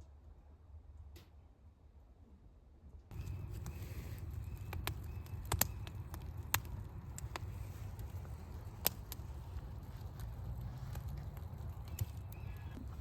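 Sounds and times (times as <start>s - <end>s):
low steady rumble: 0.1s - 13.0s
sharp fire pops: 3.1s - 12.7s
bonfire crackling: 3.1s - 13.0s.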